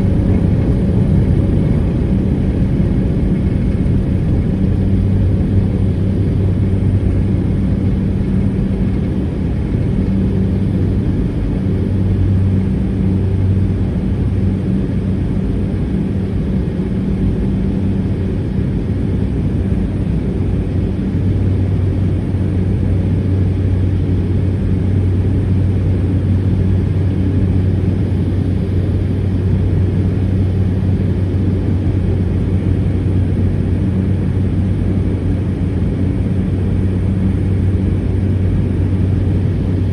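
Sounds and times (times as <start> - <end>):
turboprop engine droning: 0.0 - 39.9.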